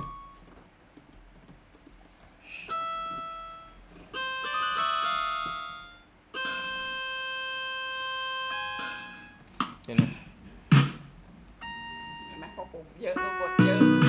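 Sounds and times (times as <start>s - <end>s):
electronic keyboard piano chords: 0.0s - 0.6s, 2.7s - 9.8s, 10.6s - 14.0s.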